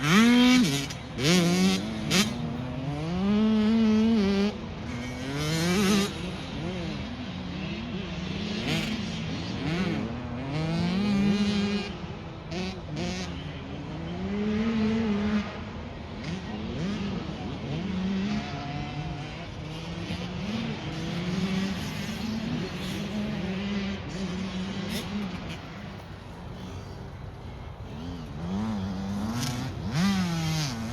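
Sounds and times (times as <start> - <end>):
car engine revving: 19.2 - 30.9.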